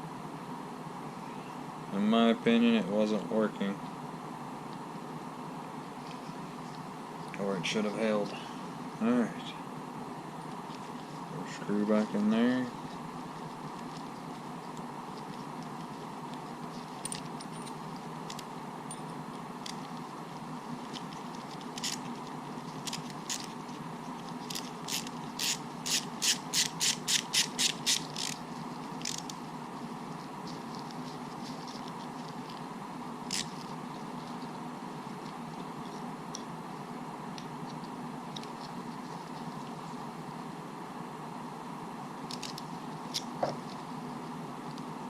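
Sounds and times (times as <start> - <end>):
steady hum: 0.0 - 45.0
hand tool clicking: 24.5 - 28.4.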